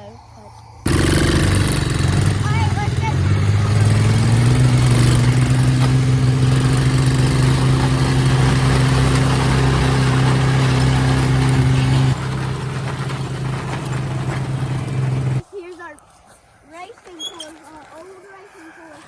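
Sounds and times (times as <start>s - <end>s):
small vehicle engine running: 0.9s - 15.4s.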